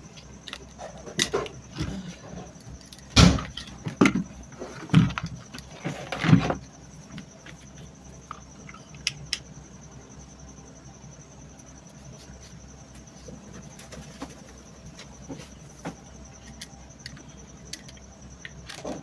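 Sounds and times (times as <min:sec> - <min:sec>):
knocks and rattles from fan: 0:00.8 - 0:06.7.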